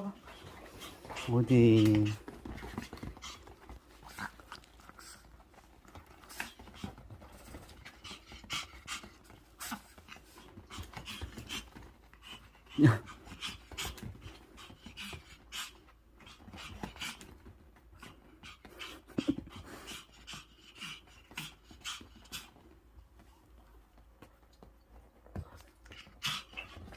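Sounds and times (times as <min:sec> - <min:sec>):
dog panting: 0:00.0 - 0:26.9.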